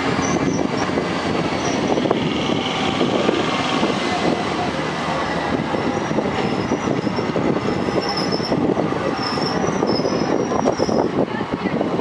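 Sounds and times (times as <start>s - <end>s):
high-pitched wheel squeals: 0.2s - 2.2s, 5.7s - 11.2s.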